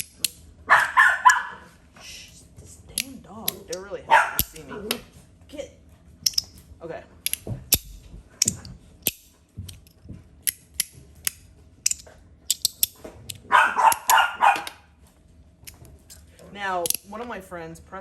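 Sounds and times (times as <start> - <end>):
dog barking: 0.7 - 1.8, 4.1 - 4.9, 13.4 - 14.9.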